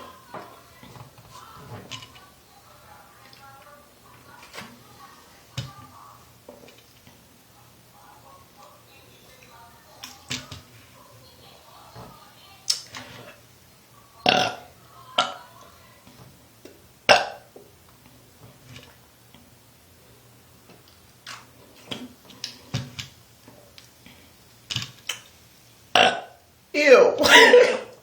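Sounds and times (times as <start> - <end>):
woman burping: 14.2 - 15.4, 17.1 - 17.5, 26.0 - 26.3, 27.1 - 28.0.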